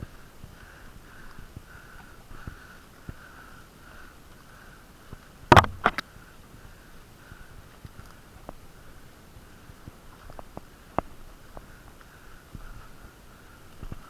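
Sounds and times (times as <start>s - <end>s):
faint breathing: 0.0s - 5.4s, 11.4s - 14.0s.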